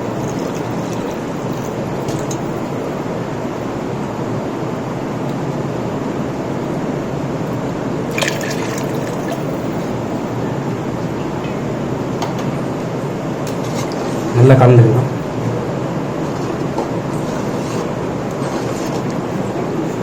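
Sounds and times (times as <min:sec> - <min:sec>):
water pouring into pot: 0:00.0 - 0:01.4, 0:08.1 - 0:09.6.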